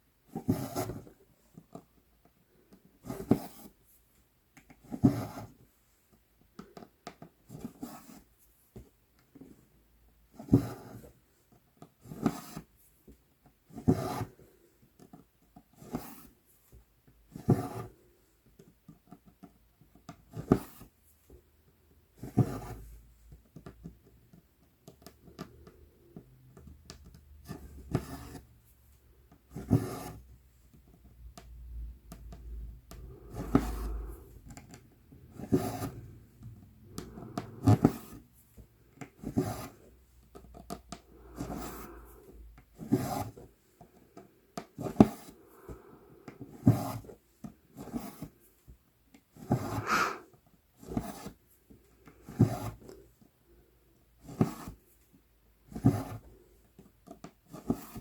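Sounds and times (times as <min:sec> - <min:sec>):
thread rubbing fabric: 0:49.4 - 0:50.3
thread pulled through cloth: 0:49.5 - 0:51.2.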